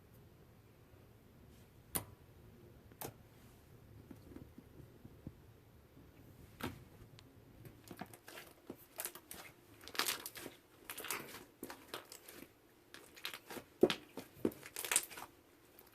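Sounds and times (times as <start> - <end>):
slime crackling and popping: 7.8 - 15.9.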